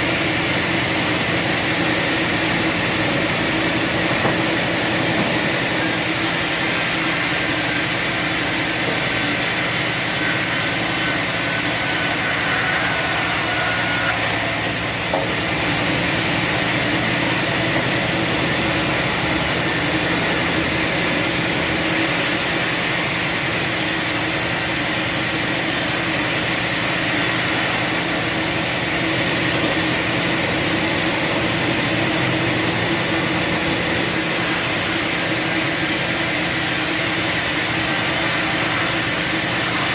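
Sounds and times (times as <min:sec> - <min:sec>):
steady engine hum: 0:00.0 - 0:07.3
band saw cutting through log: 0:00.0 - 0:39.9.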